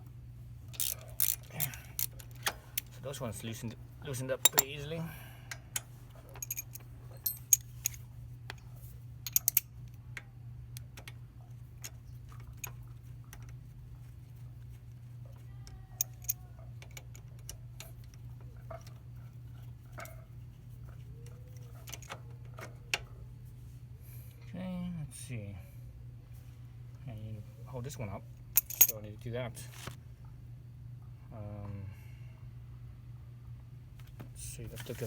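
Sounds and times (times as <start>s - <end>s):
low steady hum: 0.0s - 35.0s
hand tools clinking on metal: 0.8s - 5.0s.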